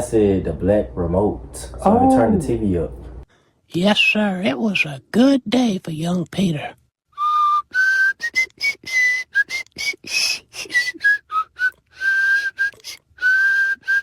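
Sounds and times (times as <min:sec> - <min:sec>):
person whistling a tune: 0:07.2 - 0:14.0.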